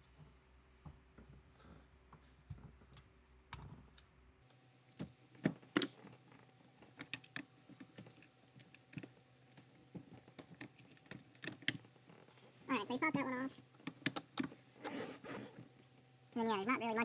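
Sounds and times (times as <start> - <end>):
tool clicking on plastic and metal parts: 6.8 - 12.3, 13.8 - 15.0.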